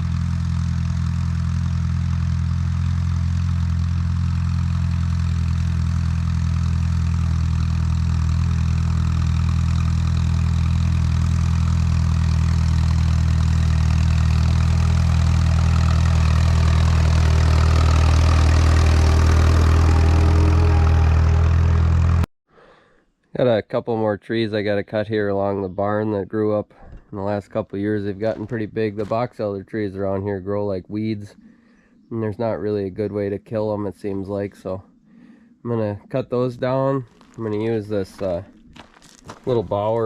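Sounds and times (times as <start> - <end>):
tractor engine running: 0.0 - 22.3, 26.9 - 30.0, 36.6 - 40.0.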